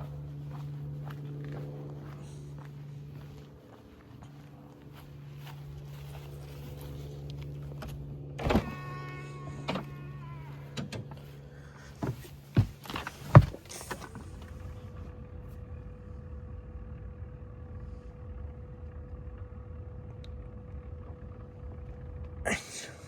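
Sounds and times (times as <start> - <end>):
steady low hum: 0.0 - 23.0
clunks and knocks in a car: 11.9 - 14.6.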